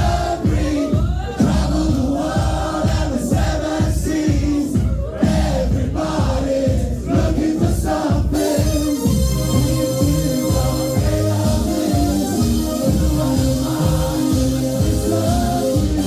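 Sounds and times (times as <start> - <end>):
crowd singing along: 0.0 - 16.0
live band playing: 8.2 - 16.0.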